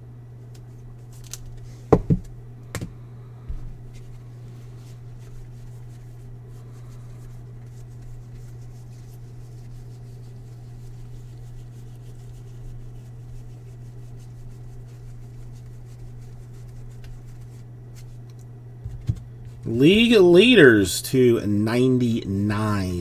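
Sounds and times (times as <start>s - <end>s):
steady low hum: 18.9s - 23.0s.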